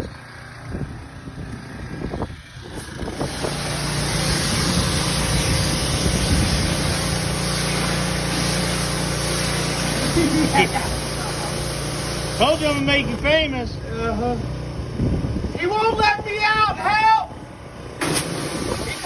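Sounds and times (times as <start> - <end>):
pressure washer engine hum: 0.1 - 19.0
water spray hissing: 2.8 - 13.2, 18.0 - 19.0.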